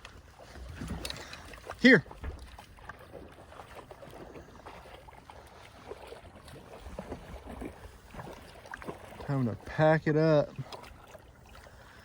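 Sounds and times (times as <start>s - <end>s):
dog wading through water: 0.0s - 12.0s.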